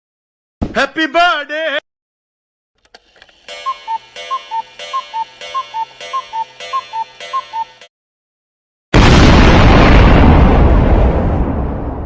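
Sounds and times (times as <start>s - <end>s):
cuckoo clock calls: 2.8s - 7.9s.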